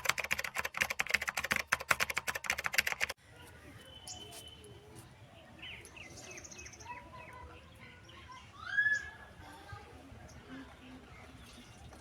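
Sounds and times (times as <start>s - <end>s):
birds chirping and trilling: 3.6s - 9.4s.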